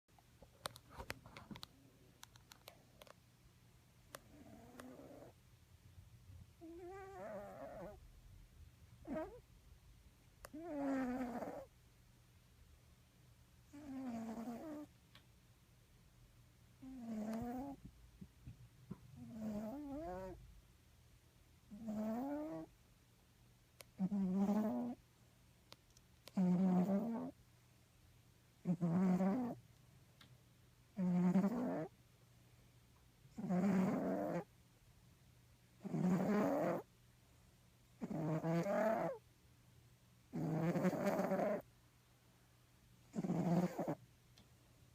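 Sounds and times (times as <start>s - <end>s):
cat snoring: 4.1s - 5.4s, 6.6s - 8.0s, 9.0s - 9.4s, 10.5s - 11.7s, 13.7s - 14.9s, 16.8s - 17.8s, 19.2s - 20.4s, 21.7s - 22.7s, 24.0s - 25.0s, 26.3s - 27.4s, 28.6s - 29.6s, 31.0s - 31.9s, 33.3s - 34.5s, 35.8s - 36.9s, 38.0s - 39.2s, 40.3s - 41.6s, 43.1s - 44.0s.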